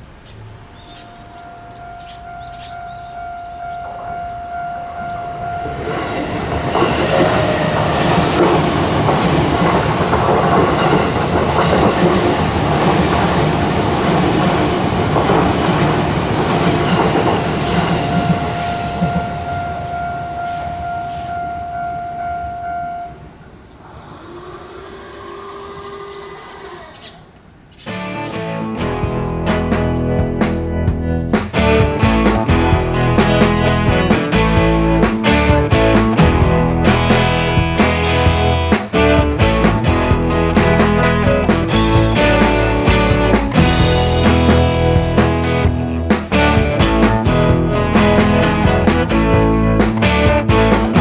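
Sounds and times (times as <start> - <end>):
level crossing alarm ringing: 0.6 - 23.7
train wheels clacking over rail joints: 5.8 - 19.6.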